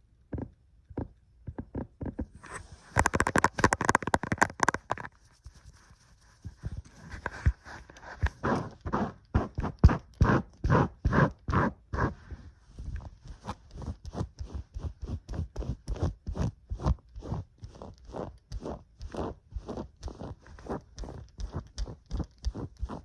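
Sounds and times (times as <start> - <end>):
rhythmic scratching strokes: 2.4 - 5.1.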